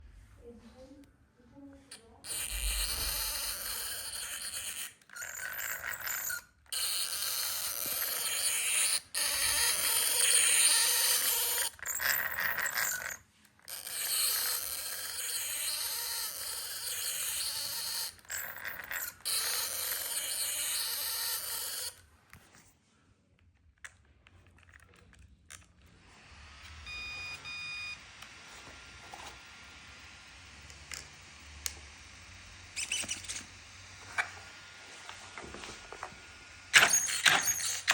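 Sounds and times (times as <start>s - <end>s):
toy car motor whirring: 1.9s - 22.5s, 29.1s - 37.9s.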